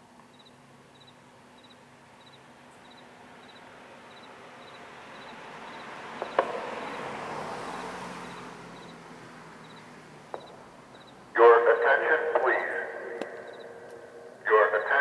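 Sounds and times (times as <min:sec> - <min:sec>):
crickets chirping: 0:00.3 - 0:09.0, 0:09.6 - 0:11.3, 0:12.4 - 0:15.0
car passing: 0:03.2 - 0:15.0.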